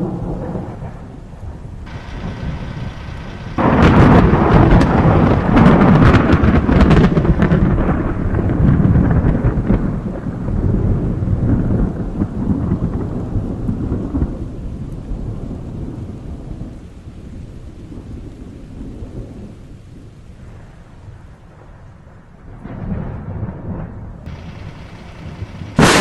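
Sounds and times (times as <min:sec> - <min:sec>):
rain falling: 0:01.9 - 0:07.6, 0:24.3 - 0:26.0
thunder rumbling: 0:01.9 - 0:07.6.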